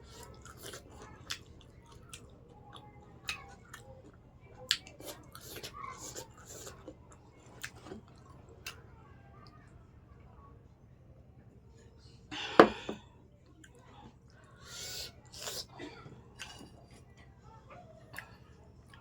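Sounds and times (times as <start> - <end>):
person chewing food: 0.0 - 8.8, 14.7 - 15.8, 16.4 - 17.2.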